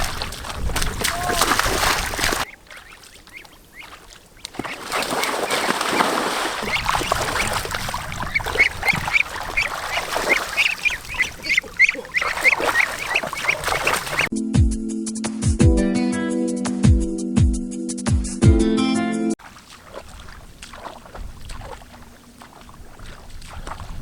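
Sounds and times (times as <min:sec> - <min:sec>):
ducks quacking: 0:01.1 - 0:14.3.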